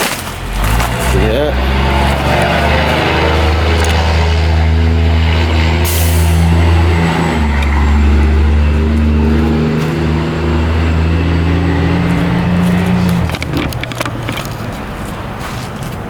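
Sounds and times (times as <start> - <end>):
low motor drone: 0.5 - 14.2
light clicks and rattles: 12.6 - 14.8.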